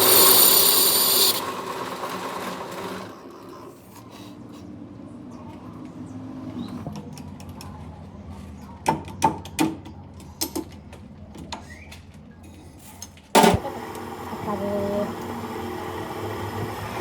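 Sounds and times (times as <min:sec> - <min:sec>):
machine humming: 0:00.0 - 0:01.8, 0:13.4 - 0:17.0
machine starting clunk: 0:13.4 - 0:14.2.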